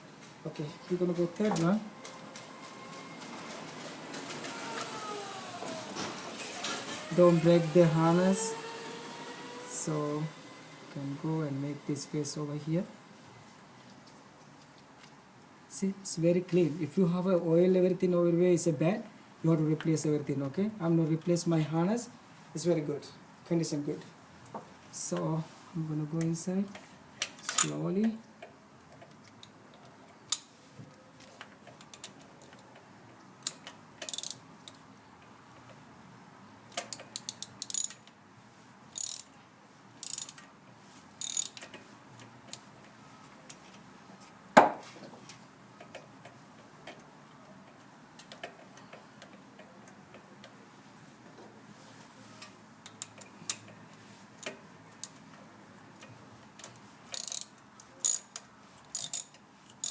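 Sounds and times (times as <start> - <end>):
socket wrench ratchet clicking: 33.4 - 34.4, 36.9 - 38.0, 39.0 - 39.3, 40.0 - 40.4, 41.2 - 41.7, 57.1 - 59.9.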